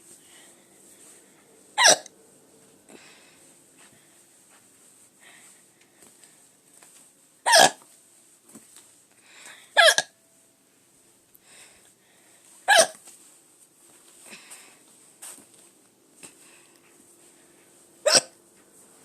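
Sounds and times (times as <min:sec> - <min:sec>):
person hiccuping: 0:01.8 - 0:02.1, 0:07.5 - 0:07.8, 0:09.8 - 0:10.2, 0:12.7 - 0:13.0, 0:18.0 - 0:18.4.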